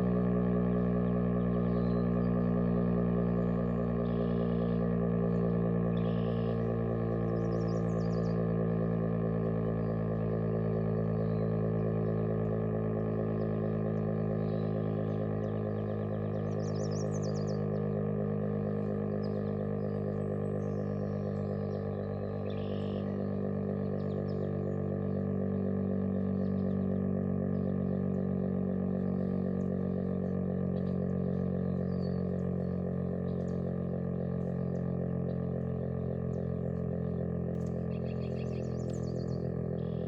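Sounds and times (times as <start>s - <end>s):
dual-tone warning siren: 3.2s - 32.5s.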